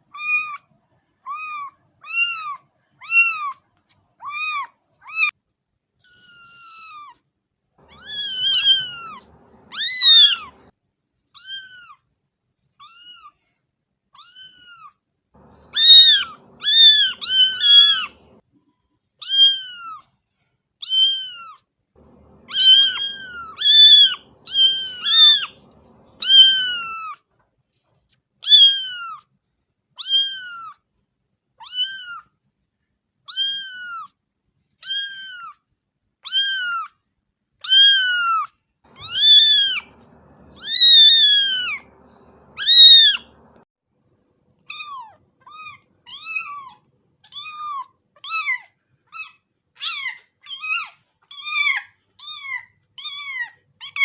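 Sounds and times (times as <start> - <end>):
cat meowing: 1.3 - 3.6, 4.2 - 5.3, 6.0 - 7.2, 7.8 - 10.7, 11.4 - 12.0, 12.8 - 13.3, 14.2 - 18.4, 19.2 - 20.0, 20.8 - 27.2, 28.4 - 29.2, 30.0 - 30.8, 31.6 - 32.3, 33.3 - 34.1, 36.2 - 36.9, 37.6 - 43.6, 44.7 - 54.0.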